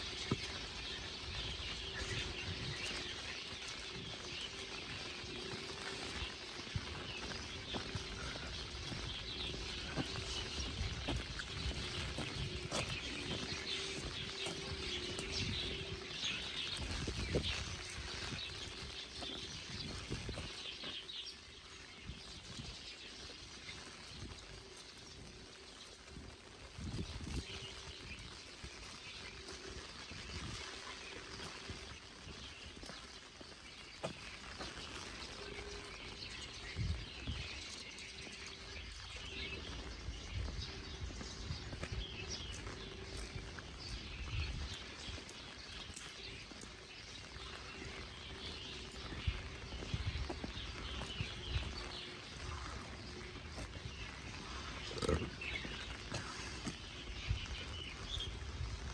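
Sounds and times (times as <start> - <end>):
rain falling: 0.0 - 21.6, 41.1 - 58.9
small birds chirping: 0.0 - 58.9
wind rumbling on microphone: 0.0 - 58.9.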